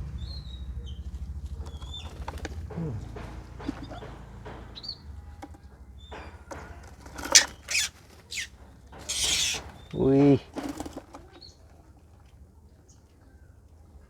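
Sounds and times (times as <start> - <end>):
low hum: 0.0 - 6.6
songbirds chirping: 0.0 - 14.0.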